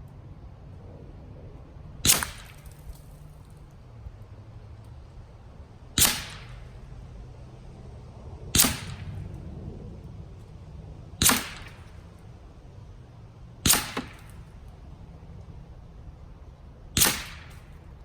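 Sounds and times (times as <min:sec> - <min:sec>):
air rifle shots cracking: 0:02.0 - 0:03.3, 0:06.0 - 0:07.0, 0:08.6 - 0:09.5, 0:11.2 - 0:12.3, 0:13.6 - 0:14.8, 0:17.0 - 0:18.0.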